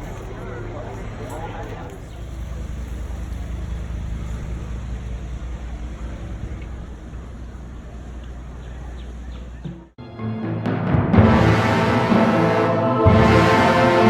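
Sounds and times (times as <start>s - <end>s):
outdoor noise: 0.0s - 10.0s
low machine rumble: 2.0s - 9.9s.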